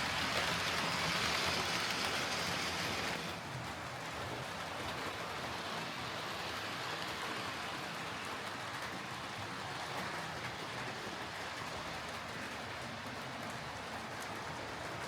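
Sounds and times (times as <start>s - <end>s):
model train motor whirring: 0.0s - 3.4s
wheels rolling on rails: 0.0s - 15.0s.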